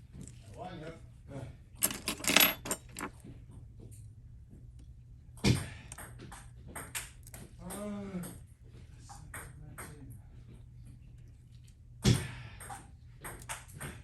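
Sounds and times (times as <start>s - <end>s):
small tools clicking on metal: 1.8s - 3.1s.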